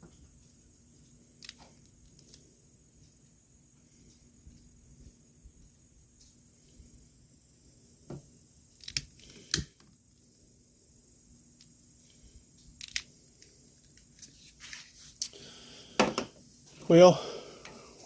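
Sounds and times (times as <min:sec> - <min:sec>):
hand tool clicks and snips: 0:08.8 - 0:09.7, 0:12.8 - 0:13.1.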